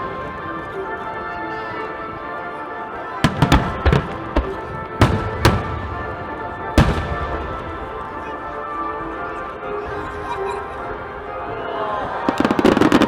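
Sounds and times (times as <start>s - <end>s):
background music: 0.0s - 13.0s
fireworks bangs: 3.2s - 8.7s, 12.2s - 13.0s.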